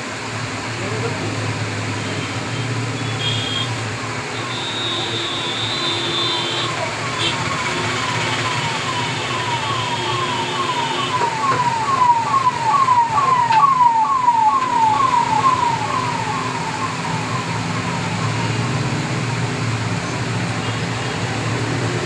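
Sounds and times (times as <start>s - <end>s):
electronic falling chirp siren: 8.0s - 19.2s.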